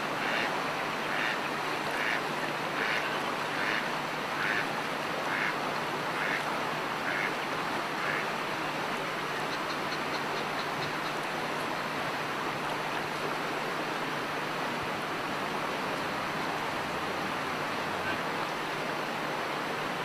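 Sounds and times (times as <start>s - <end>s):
steady background hiss: 0.0s - 20.0s
duck quacking: 3.6s - 3.8s, 5.3s - 5.6s, 7.1s - 7.3s.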